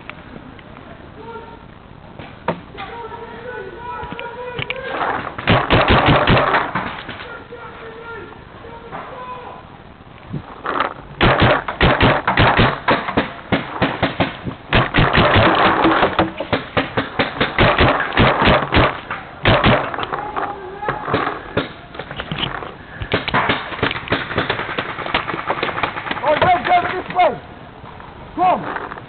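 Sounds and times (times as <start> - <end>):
paintball marker firing: 5.4 - 7.1, 11.2 - 20.2, 21.0 - 26.7.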